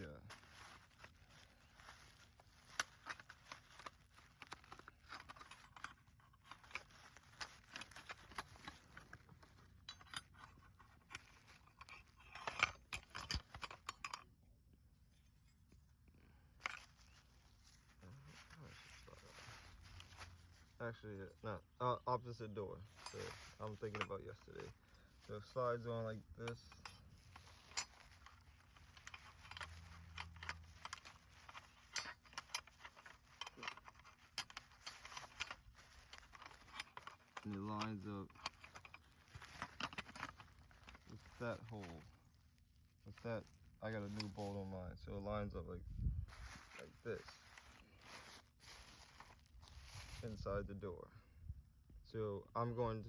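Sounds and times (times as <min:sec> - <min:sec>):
light metallic rattles: 0:00.0 - 0:14.4, 0:22.7 - 0:42.4.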